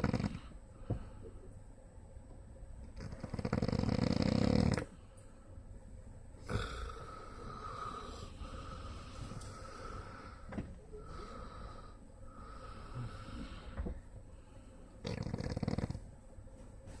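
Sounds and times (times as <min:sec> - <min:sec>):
man snoring: 0:00.0 - 0:00.5, 0:03.0 - 0:04.9, 0:06.4 - 0:10.4, 0:11.0 - 0:13.6, 0:15.0 - 0:16.0
breathing noise: 0:06.4 - 0:14.9.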